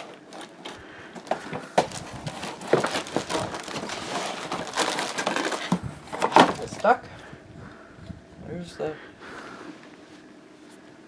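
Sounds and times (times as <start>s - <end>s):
cardboard box rustling and scraping: 0.0s - 7.0s.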